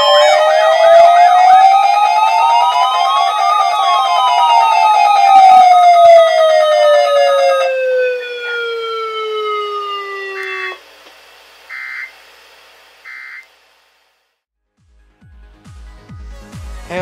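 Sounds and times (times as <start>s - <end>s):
siren winding down: 0.0s - 10.8s.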